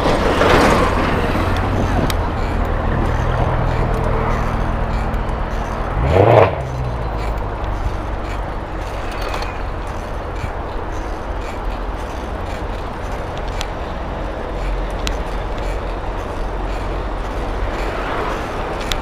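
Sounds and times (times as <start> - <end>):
vehicle passing close: 0.0 - 10.5
traffic engine rumble: 0.0 - 19.0.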